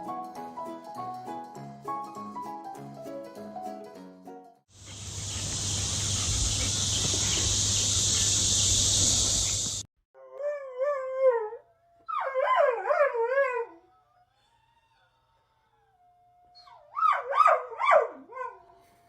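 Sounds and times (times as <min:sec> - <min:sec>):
dog howling: 0:10.2 - 0:18.7.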